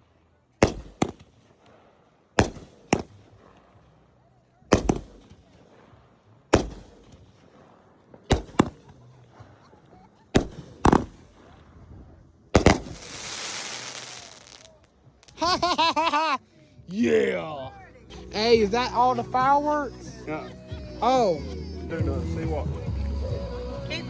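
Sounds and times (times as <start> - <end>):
fireworks bangs: 0.6 - 4.0, 4.7 - 11.9, 12.6 - 16.2.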